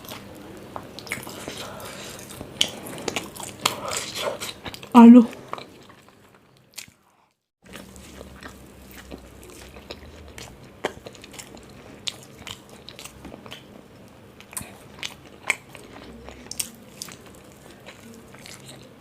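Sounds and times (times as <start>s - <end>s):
chewing and crunching: 0.0s - 19.0s.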